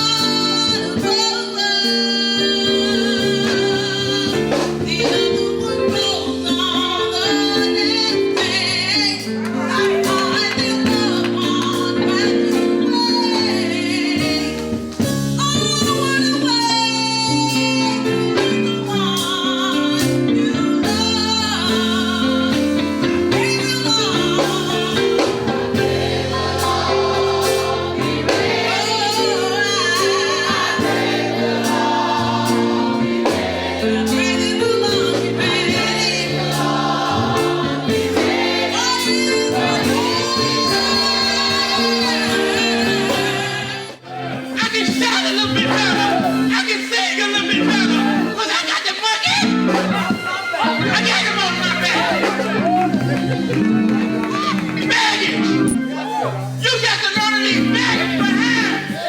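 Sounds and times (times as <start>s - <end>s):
gospel singing with vibrato: 0.0s - 59.0s
sustained instrumental chords: 20.2s - 46.6s, 49.5s - 59.0s.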